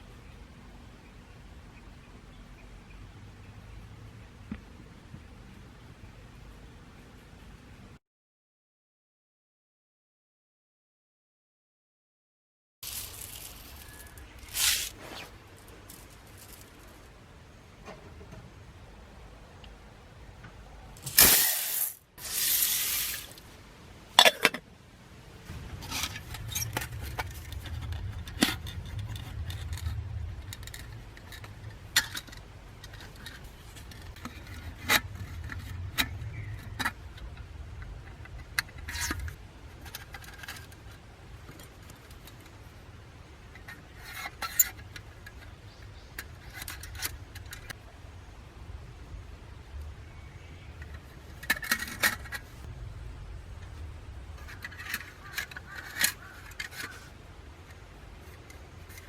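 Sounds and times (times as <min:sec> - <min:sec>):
small metal pieces clinking: 0:12.8 - 0:17.1
loud rushing noise: 0:25.2 - 0:39.9.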